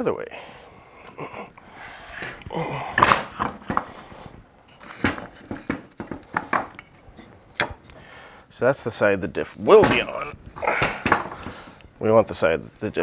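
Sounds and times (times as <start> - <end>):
metal clanks and knocks: 4.7 - 7.9, 9.7 - 11.7
tool clatter: 4.7 - 8.0, 9.7 - 11.7.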